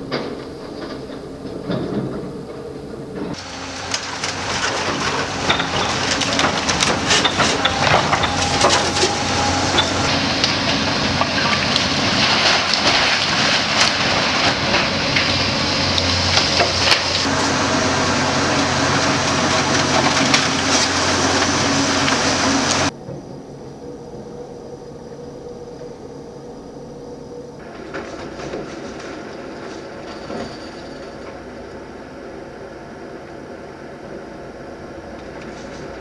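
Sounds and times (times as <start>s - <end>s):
heavy machine engine drone: 0.0s - 36.0s
debris crushing and splintering: 3.4s - 22.2s.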